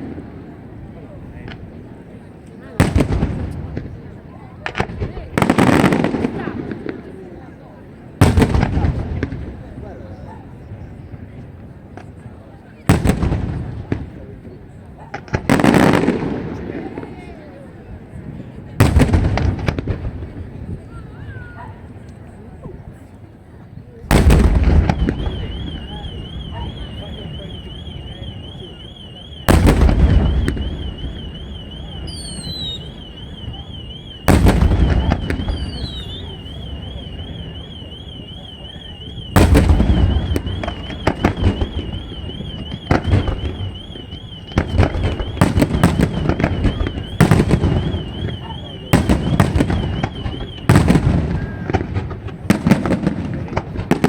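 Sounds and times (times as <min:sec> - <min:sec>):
rapid firework bangs and crackles: 0:00.0 - 0:21.2, 0:24.0 - 0:54.0
falling whistles: 0:24.8 - 0:51.7.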